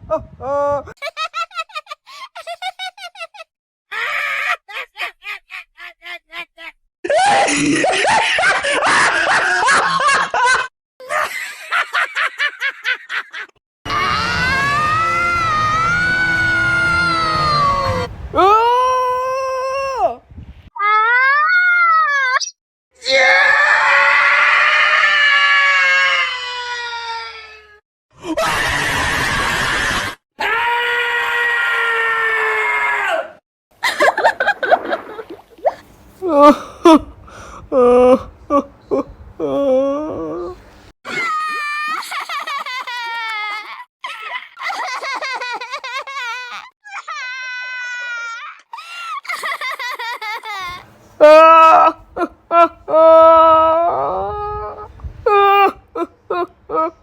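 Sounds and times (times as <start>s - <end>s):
music: 13.9s - 18.3s
cartoon character screaming: 13.9s - 20.2s, 20.8s - 22.4s, 23.0s - 27.7s, 28.3s - 33.4s, 46.8s - 49.3s, 51.2s - 56.5s
cartoon wobbling cry: 50.7s - 56.9s.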